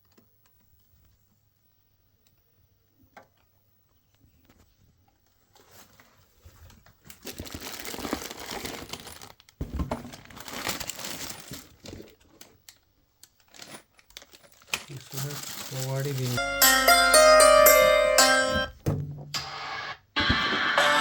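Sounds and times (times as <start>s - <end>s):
plastic packaging crinkling: 5.5s - 16.5s.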